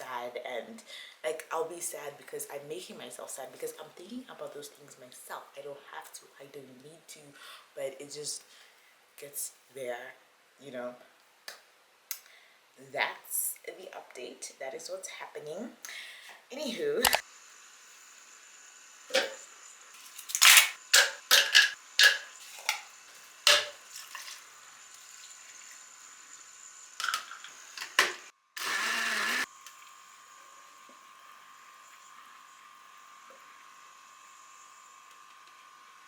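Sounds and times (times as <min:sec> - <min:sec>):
kitchen things clicking and knocking: 0:19.1 - 0:19.4, 0:20.2 - 0:24.4, 0:27.0 - 0:28.2
blender running: 0:24.2 - 0:36.0.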